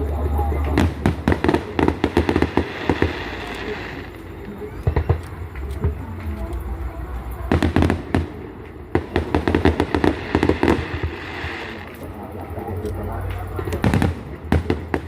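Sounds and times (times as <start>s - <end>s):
fireworks bangs and crackles: 0.0s - 15.0s
steady low rumble: 0.0s - 15.0s.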